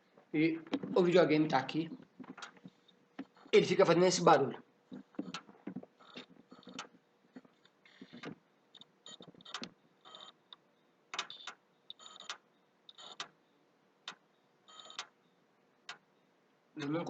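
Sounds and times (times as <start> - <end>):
console clicks and crackles: 1.9 - 3.6, 4.9 - 13.4, 14.0 - 15.2.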